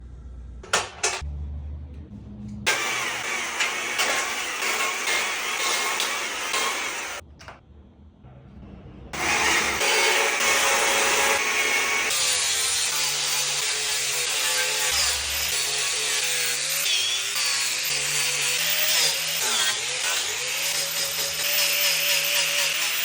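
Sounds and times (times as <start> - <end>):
chainsaw cutting wood: 2.7 - 7.2, 9.2 - 23.0.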